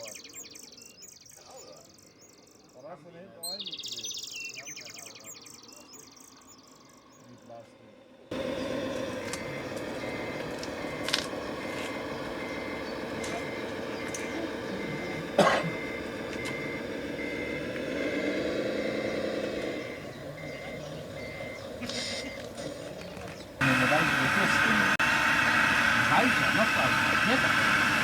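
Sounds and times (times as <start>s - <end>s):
reversing beeper: 8.3s - 22.6s, 23.6s - 28.0s
motor hum: 8.3s - 28.0s.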